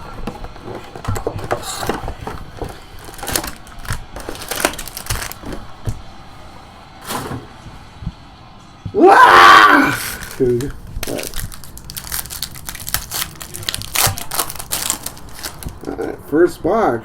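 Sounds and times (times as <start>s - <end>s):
plastic wrapping crinkling and tearing: 0.0s - 6.0s, 9.7s - 16.2s.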